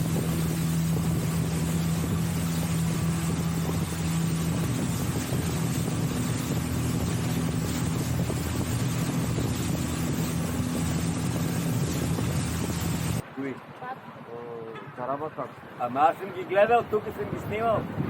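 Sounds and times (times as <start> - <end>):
boat engine running: 0.0 - 13.2.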